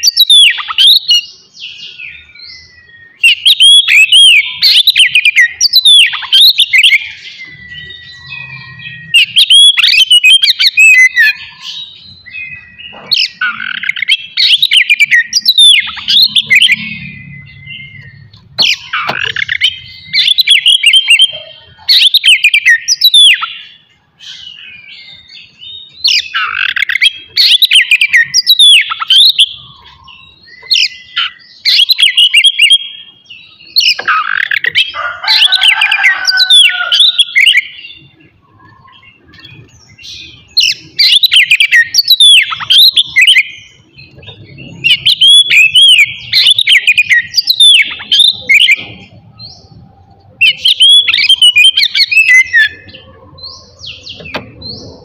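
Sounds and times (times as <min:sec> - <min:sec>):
songbird whistling and chattering: 0:00.0 - 0:55.0.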